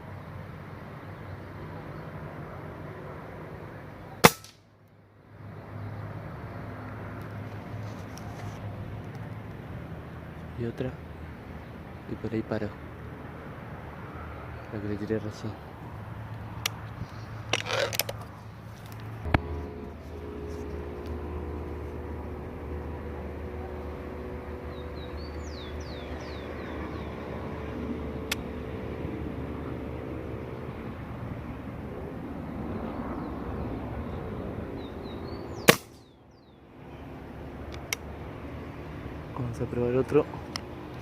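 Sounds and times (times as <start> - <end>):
engine humming: 0.0 - 41.0
bird chirps: 24.7 - 27.2, 34.8 - 36.6.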